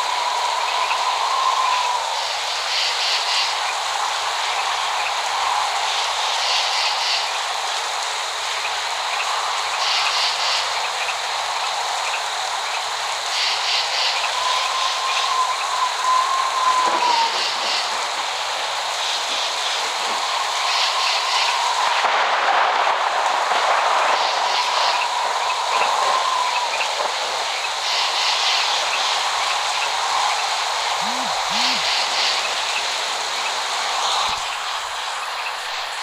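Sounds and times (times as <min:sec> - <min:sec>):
steady rain hiss: 0:00.0 - 0:36.0
faint high tone: 0:31.0 - 0:32.0.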